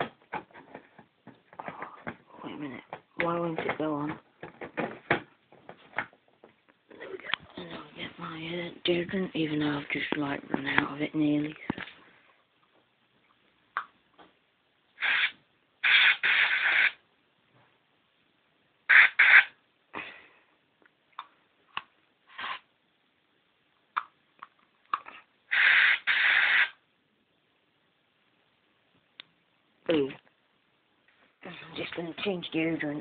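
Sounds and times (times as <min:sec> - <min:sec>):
aerosol can spraying: 0:15.0 - 0:17.0, 0:18.9 - 0:19.5, 0:25.5 - 0:26.8.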